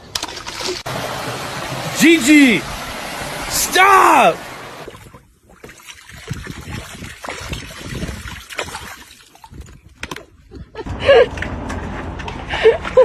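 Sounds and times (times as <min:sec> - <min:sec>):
dog splashing in water: 0:04.8 - 0:09.6.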